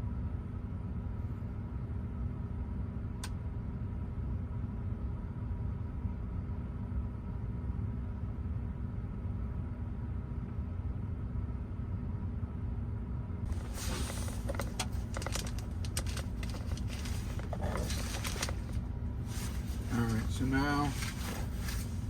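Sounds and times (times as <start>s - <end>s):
clicking and rustling handling: 13.5s - 22.0s
low motor hum: 13.5s - 22.0s.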